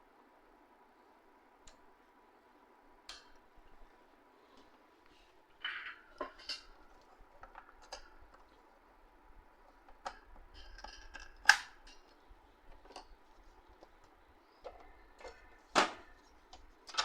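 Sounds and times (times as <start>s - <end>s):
plastic clicks and knocks on printer: 9.8s - 17.0s.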